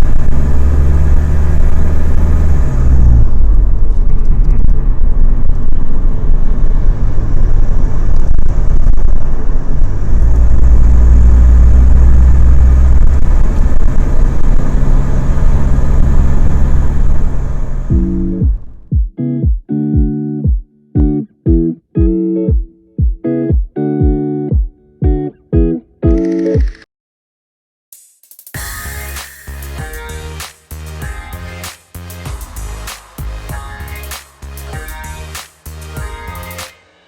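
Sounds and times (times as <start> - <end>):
diesel engine running: 0.0 - 18.9
high air hiss: 28.6 - 37.0.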